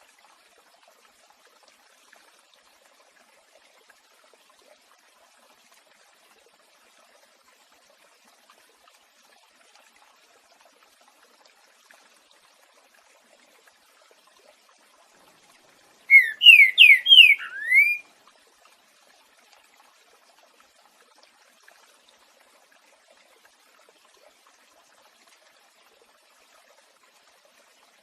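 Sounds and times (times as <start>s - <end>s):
water trickling: 0.0s - 28.0s
bird whistling song: 16.1s - 18.0s.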